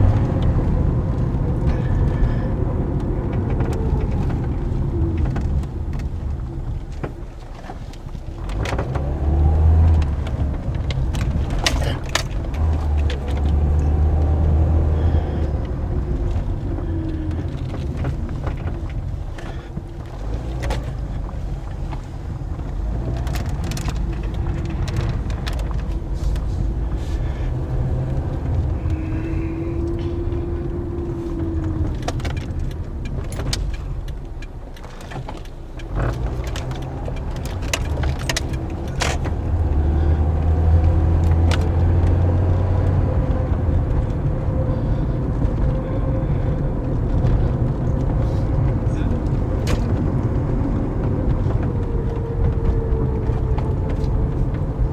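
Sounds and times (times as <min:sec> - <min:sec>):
car engine and road rumble: 0:00.0 - 0:54.9.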